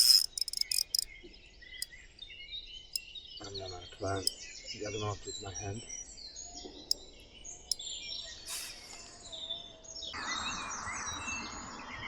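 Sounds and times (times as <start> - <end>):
sharp clicks: 0.0 - 1.1
small birds chirping: 0.0 - 12.0.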